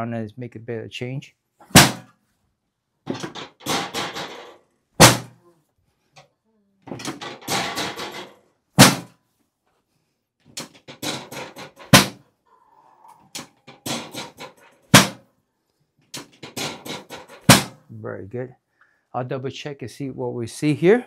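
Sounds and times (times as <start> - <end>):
drop table clicks and knocks: 3.1 - 4.6.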